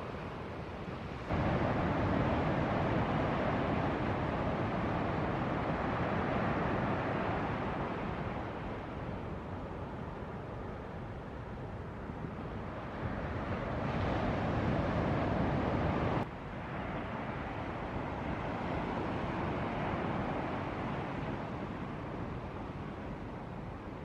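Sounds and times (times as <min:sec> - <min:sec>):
ocean surf breaking: 0:01.1 - 0:08.8, 0:12.8 - 0:16.2.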